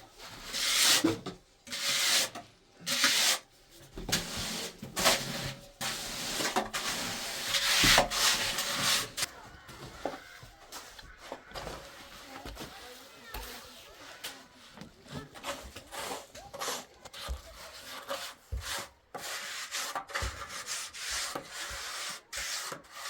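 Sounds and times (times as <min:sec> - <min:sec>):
hand tool scraping on masonry: 0:00.2 - 0:23.0.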